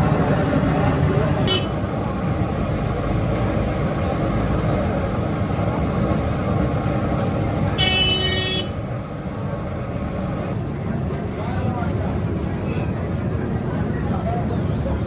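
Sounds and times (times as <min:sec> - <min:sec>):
street traffic rumble: 0:00.0 - 0:15.0
high-pitched vehicle horn: 0:01.4 - 0:01.8, 0:07.8 - 0:08.8.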